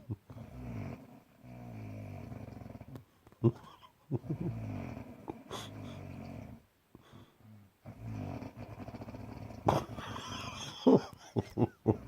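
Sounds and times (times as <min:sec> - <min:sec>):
person snoring: 0:04.2 - 0:06.6.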